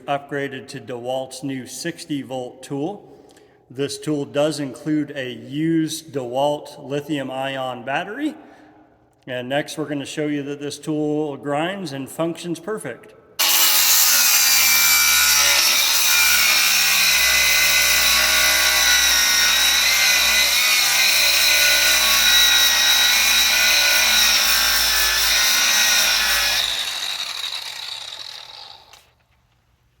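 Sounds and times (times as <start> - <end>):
angle grinder whining: 13.4 - 29.1
grinder disc spinning down: 13.4 - 29.1.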